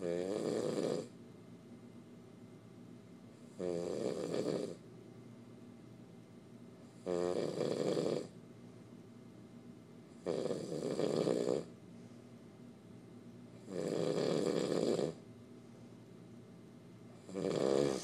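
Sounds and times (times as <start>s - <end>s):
person snoring: 0.0s - 1.1s, 3.5s - 4.8s, 7.0s - 8.4s, 10.2s - 11.7s, 13.6s - 15.2s, 17.2s - 18.0s
quiet breathing: 10.7s - 12.6s, 14.4s - 16.3s.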